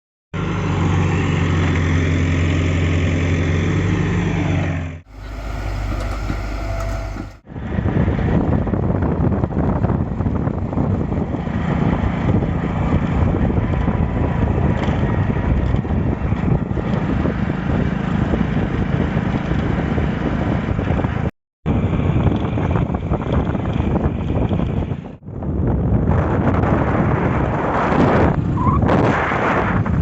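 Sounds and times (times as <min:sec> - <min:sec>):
diesel engine rumbling under load: 0:01.3 - 0:07.4.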